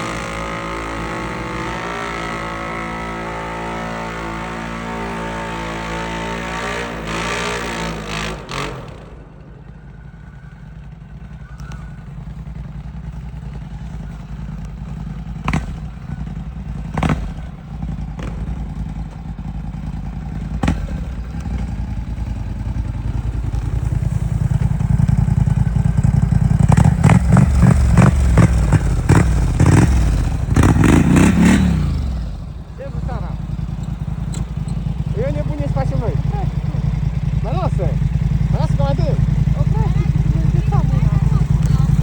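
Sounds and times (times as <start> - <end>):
atv engine running: 0.0 - 42.0.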